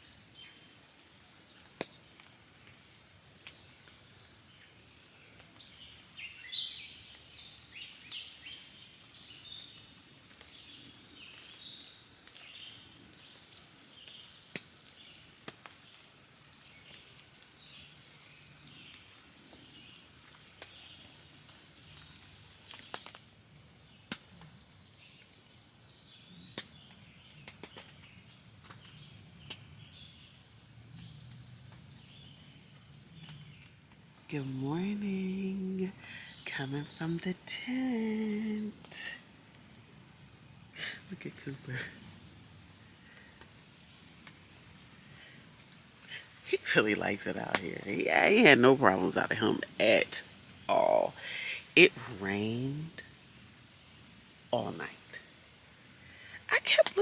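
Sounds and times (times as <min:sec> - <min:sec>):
birds chirping and calling: 0:35.9 - 0:39.2.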